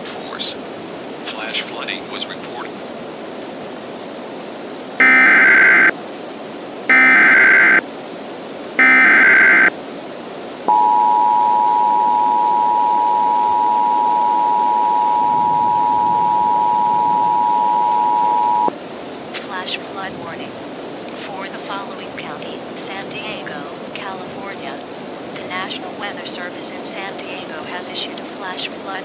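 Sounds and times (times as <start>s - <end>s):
radio hiss: 0.0s - 3.0s, 10.6s - 29.0s
two-tone attention signal: 5.0s - 5.9s, 6.9s - 7.8s, 8.8s - 9.7s, 10.7s - 18.7s
data bursts: 5.0s - 6.0s, 6.9s - 7.8s, 8.8s - 9.7s, 10.7s - 18.8s.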